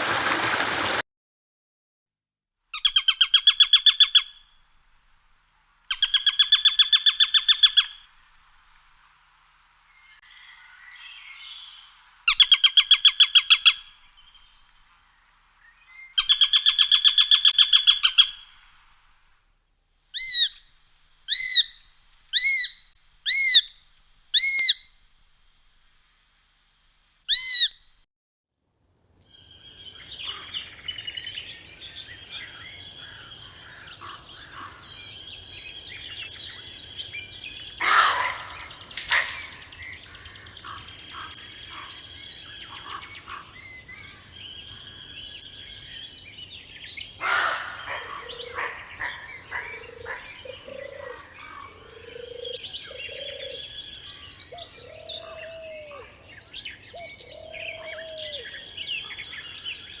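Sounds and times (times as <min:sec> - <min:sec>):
sharp bird calls: 0:20.2 - 0:20.7, 0:21.3 - 0:25.0, 0:27.3 - 0:27.9, 0:37.3 - 0:45.8, 0:47.0 - 0:56.1
songbirds chirping and singing: 0:29.4 - 1:00.0.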